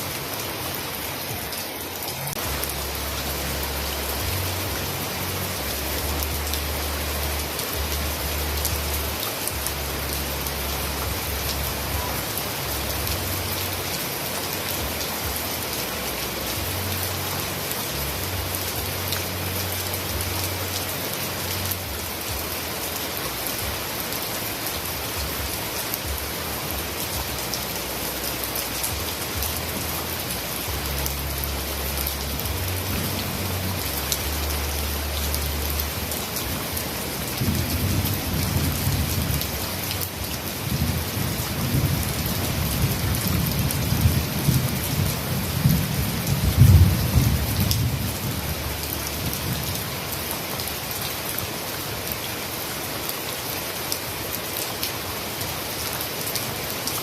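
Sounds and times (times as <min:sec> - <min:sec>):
heavy rain falling: 0:00.0 - 0:57.0
rolling thunder rumble: 0:40.6 - 0:48.6.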